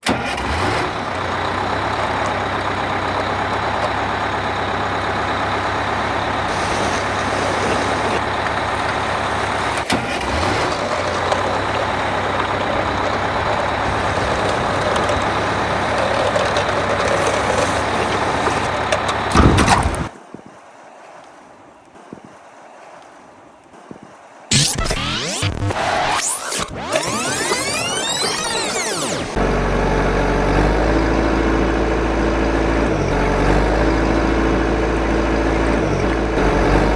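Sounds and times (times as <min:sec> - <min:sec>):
truck engine idling: 0:00.0 - 0:20.1, 0:24.5 - 0:36.9.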